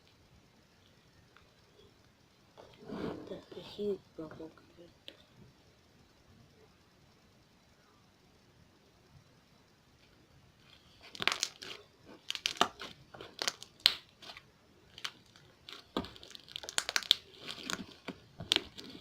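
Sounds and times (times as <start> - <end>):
slime squeezed with wet pops: 15.0 - 17.8.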